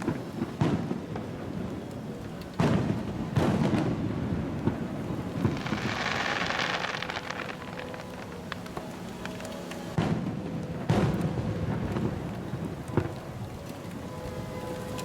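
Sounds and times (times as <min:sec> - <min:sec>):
firework crackling: 0:00.0 - 0:15.0
deep firework booms: 0:02.6 - 0:08.6.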